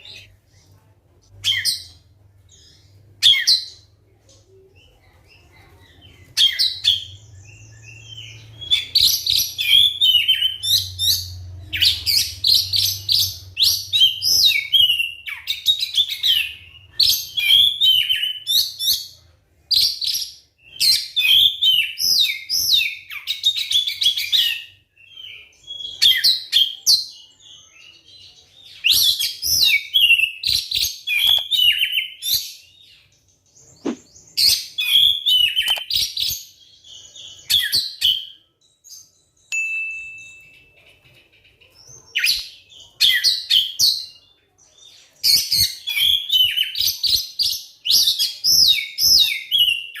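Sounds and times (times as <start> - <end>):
bird singing whistled notes: 34.0 - 40.8.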